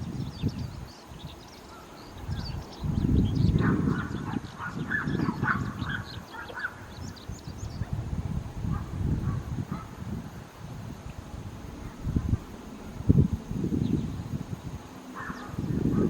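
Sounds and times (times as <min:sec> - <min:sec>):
bird singing high chirps: 0:00.0 - 0:07.9.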